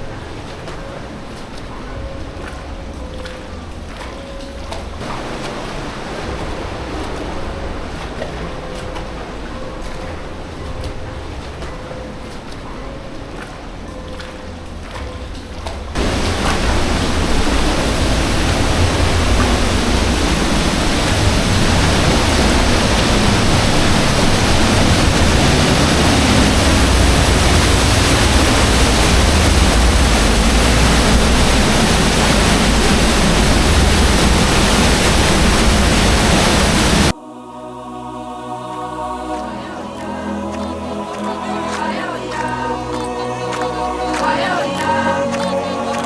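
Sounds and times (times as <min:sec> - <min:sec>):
waterfall rushing: 0:05.0 - 0:12.5, 0:16.0 - 0:37.2, 0:38.8 - 0:46.0.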